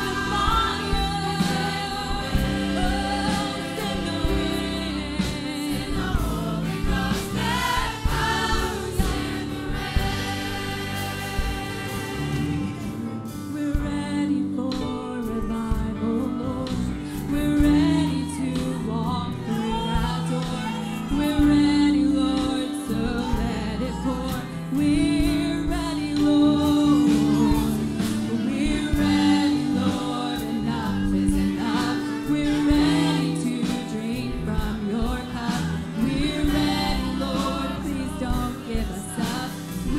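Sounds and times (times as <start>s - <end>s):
congregation and band singing: 0.0s - 39.9s.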